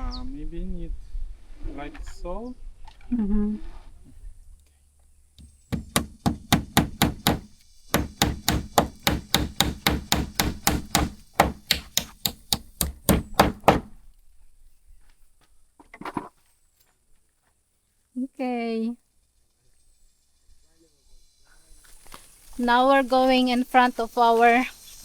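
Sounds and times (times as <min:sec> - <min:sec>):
hammer striking nail: 0:05.4 - 0:14.0.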